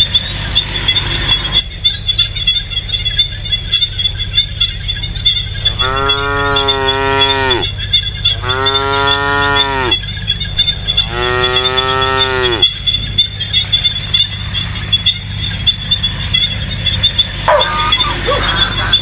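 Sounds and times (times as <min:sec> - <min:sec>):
insects chirring: 0:00.0 - 0:19.0
cow mooing: 0:05.6 - 0:10.0, 0:11.0 - 0:12.8, 0:17.5 - 0:19.0.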